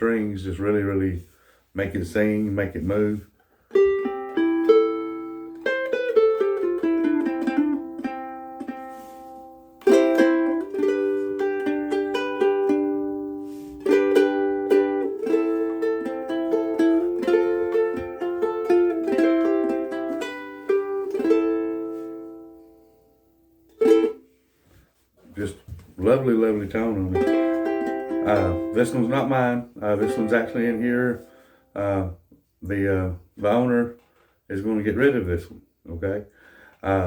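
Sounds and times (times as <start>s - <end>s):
ukulele playing: 3.7s - 24.6s, 25.4s - 32.0s.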